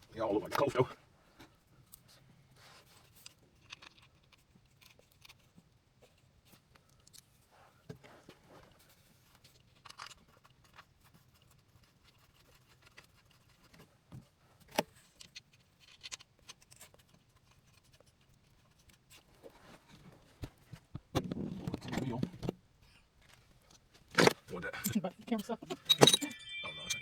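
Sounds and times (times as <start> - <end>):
hand tools clicking and tapping: 25.7 - 27.0.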